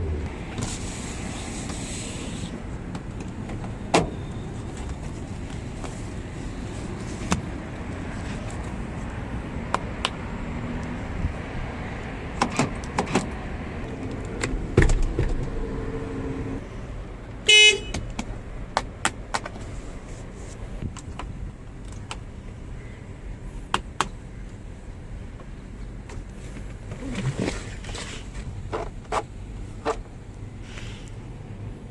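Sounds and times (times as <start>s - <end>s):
steady vehicle noise: 0.0s - 31.9s
vehicle horn toot: 17.5s - 18.0s.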